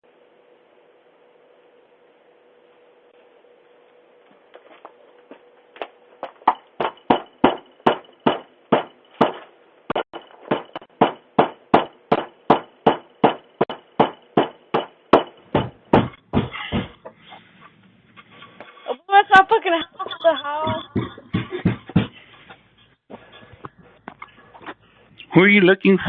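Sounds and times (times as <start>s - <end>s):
pounding on a door: 6.8s - 16.9s.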